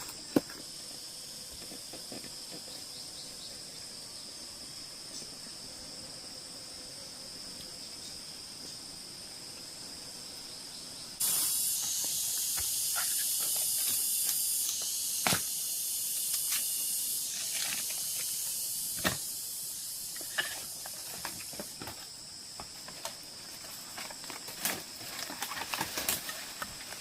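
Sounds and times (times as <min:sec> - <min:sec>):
forest insects chirring: 0:00.0 - 0:27.0
loud high hiss: 0:11.2 - 0:21.7.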